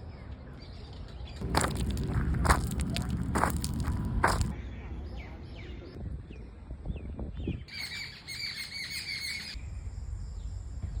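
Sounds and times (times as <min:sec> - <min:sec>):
songbirds chirping: 0:00.0 - 0:11.0
low rumble: 0:01.4 - 0:04.5.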